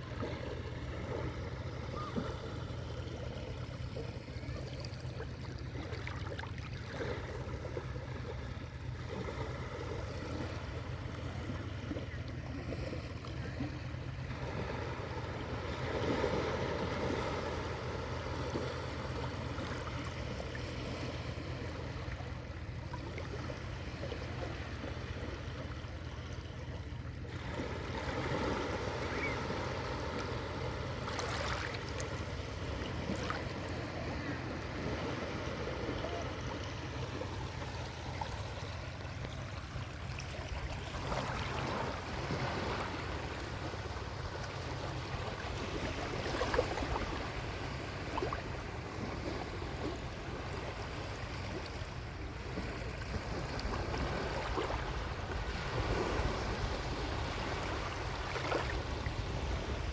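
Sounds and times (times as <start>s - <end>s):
distant voices of people playing: 0.0s - 6.0s, 28.8s - 29.7s, 33.4s - 38.1s.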